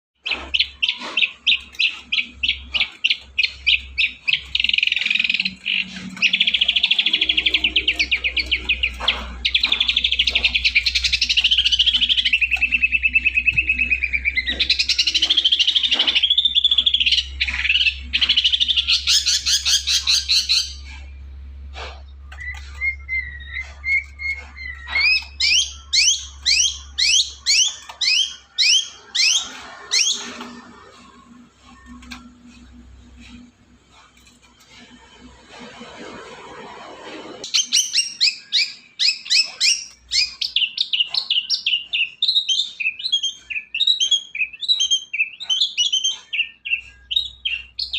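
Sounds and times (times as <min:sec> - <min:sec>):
shrike singing chattering song: 0:00.2 - 0:21.2, 0:22.2 - 0:33.5.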